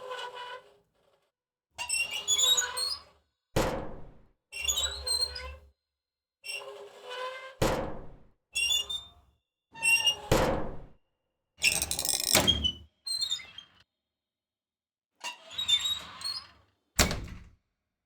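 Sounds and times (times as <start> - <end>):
door hinges creaking: 11.6 - 12.7.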